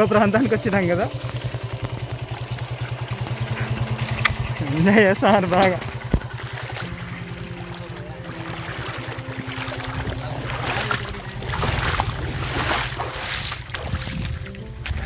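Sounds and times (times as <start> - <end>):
engine running: 0.0 - 15.0
wind noise on microphone: 11.4 - 15.0.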